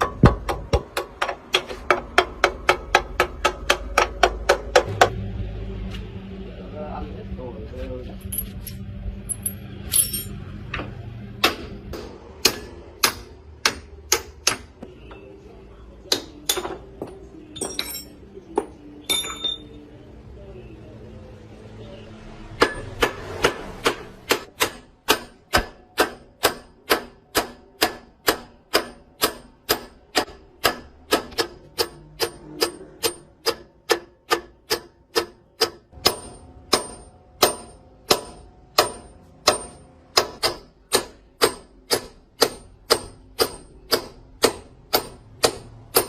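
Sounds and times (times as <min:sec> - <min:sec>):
hammer striking metal: 0:00.0 - 0:05.2, 0:11.4 - 0:15.2, 0:16.1 - 0:19.8, 0:22.5 - 0:46.0.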